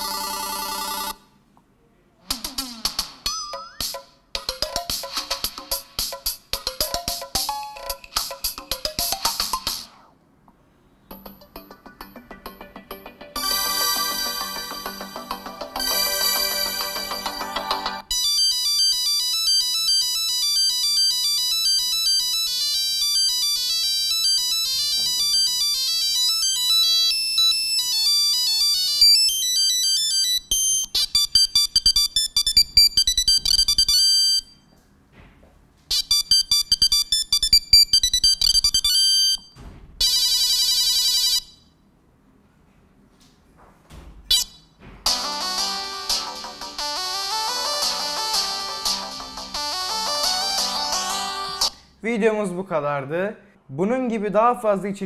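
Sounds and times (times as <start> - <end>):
electronic ringtone melodies: 0.0 - 1.3, 3.3 - 9.7, 11.1 - 34.6, 35.9 - 39.4, 45.1 - 51.8.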